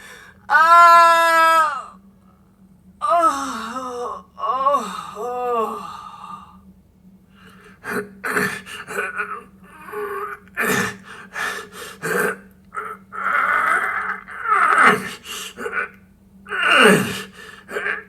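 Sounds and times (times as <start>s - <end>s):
person wailing: 0.5s - 2.0s, 3.0s - 6.0s, 12.0s - 18.0s
person sobbing: 3.0s - 6.4s, 7.8s - 18.0s.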